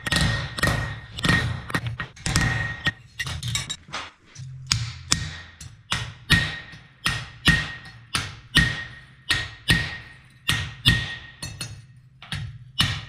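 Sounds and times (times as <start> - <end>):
hammer striking steel on anvil: 0.0 - 13.0.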